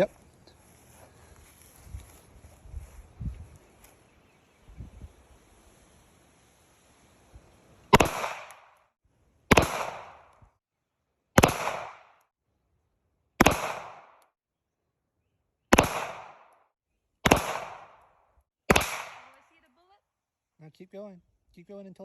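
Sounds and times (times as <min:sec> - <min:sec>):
gunshots: 0:07.9 - 0:08.8, 0:09.5 - 0:10.3, 0:11.4 - 0:12.2, 0:13.4 - 0:14.2, 0:15.7 - 0:16.5, 0:17.2 - 0:18.0, 0:18.7 - 0:19.5.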